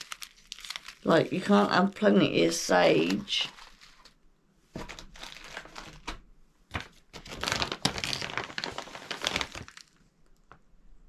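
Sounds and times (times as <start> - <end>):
herb packets crinkling: 0.0 - 4.1, 4.8 - 6.1, 6.7 - 10.0.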